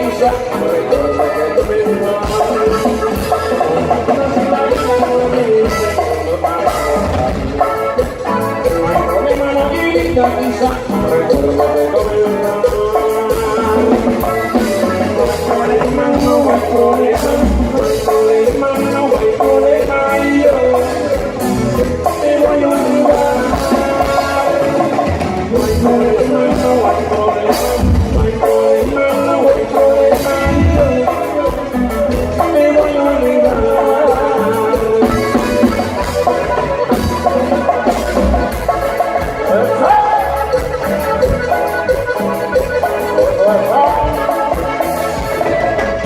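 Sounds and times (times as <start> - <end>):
band music with drum kit: 0.0 - 46.0.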